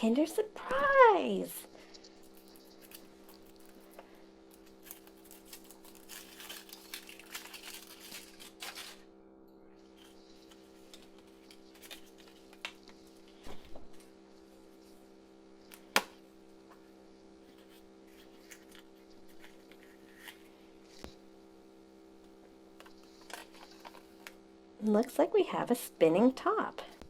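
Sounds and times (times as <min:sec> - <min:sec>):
foil wrapper crinkling and tearing: 0:02.0 - 0:09.1, 0:10.0 - 0:13.0, 0:18.1 - 0:20.5.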